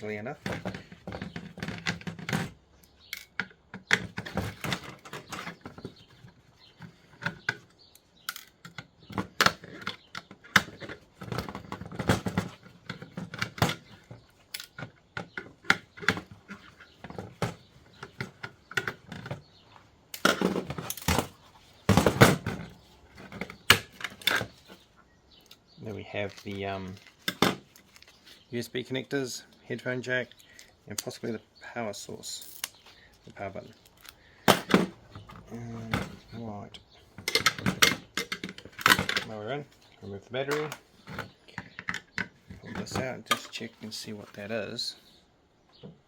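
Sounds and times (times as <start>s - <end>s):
clicks and clatters of handled parts: 0.0s - 31.4s, 32.2s - 44.5s
knocks and rattles: 0.4s - 7.7s, 8.4s - 19.6s, 20.2s - 24.8s, 34.4s - 39.7s.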